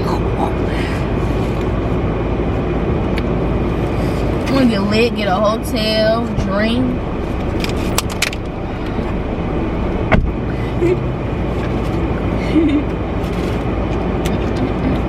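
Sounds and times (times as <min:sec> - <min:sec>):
car interior rumble: 0:00.0 - 0:15.0.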